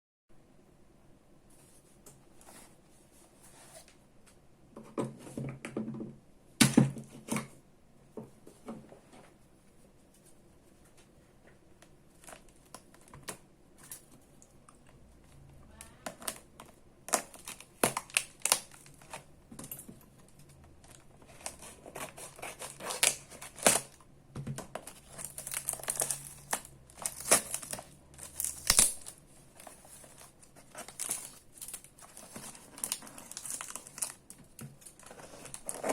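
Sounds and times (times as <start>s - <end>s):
packaging crinkling and tearing: 16.1s - 19.3s, 20.2s - 24.0s, 24.6s - 35.9s.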